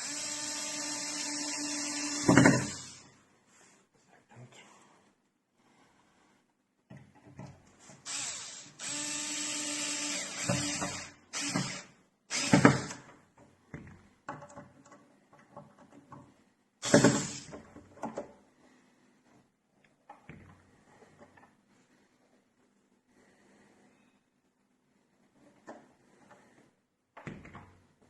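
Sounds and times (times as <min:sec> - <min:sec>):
electric screwdriver driving screws: 0:00.0 - 0:03.0, 0:08.1 - 0:13.0, 0:16.8 - 0:17.5.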